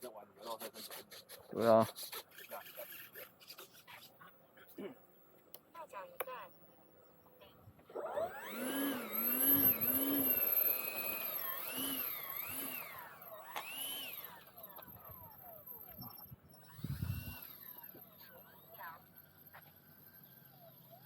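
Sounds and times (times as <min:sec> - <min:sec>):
model aircraft motor whining: 0:07.8 - 0:21.0.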